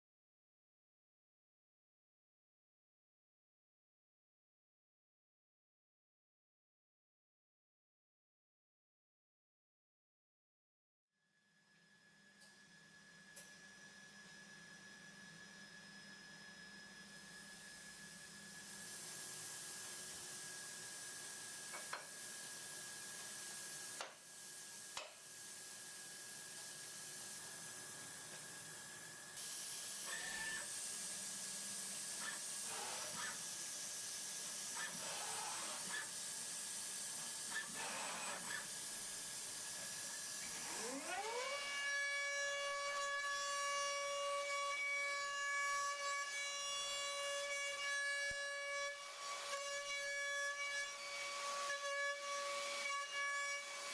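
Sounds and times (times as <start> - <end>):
milling machine hissing: 17.6 - 41.1.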